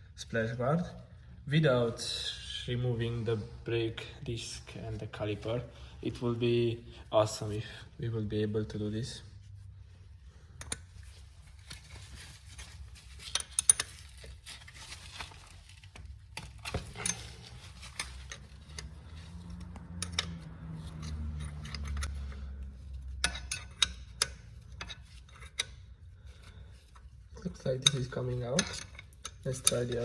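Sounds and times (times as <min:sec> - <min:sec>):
hand tools clinking against metal: 0:27.4 - 0:30.0.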